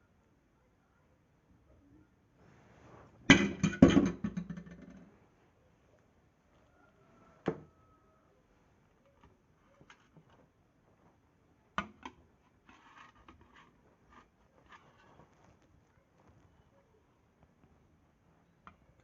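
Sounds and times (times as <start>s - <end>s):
short rustle: 2.4s - 3.3s
kitchen utensils knocking: 3.3s - 5.0s.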